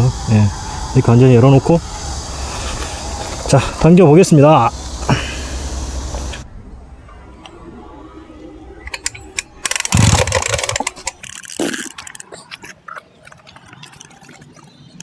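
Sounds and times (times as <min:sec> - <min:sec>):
engine turning over: 0:08.8 - 0:12.2
recoil starter rope rasping: 0:09.2 - 0:12.6.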